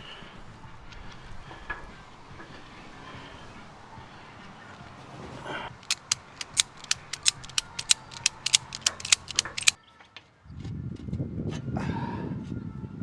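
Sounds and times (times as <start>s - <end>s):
ratchet clicking: 5.8s - 9.8s.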